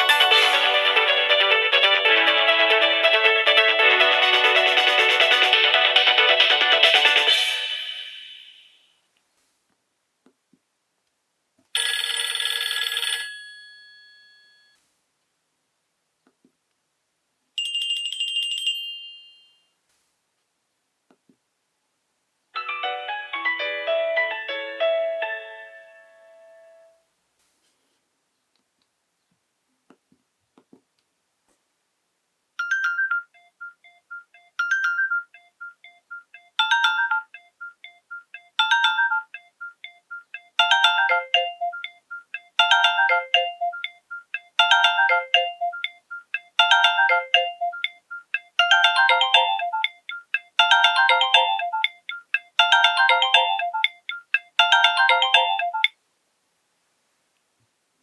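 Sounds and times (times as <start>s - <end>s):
polyphonic phone ringtone: 0.0s - 8.2s, 11.8s - 14.8s, 36.6s - 37.5s, 38.6s - 56.0s.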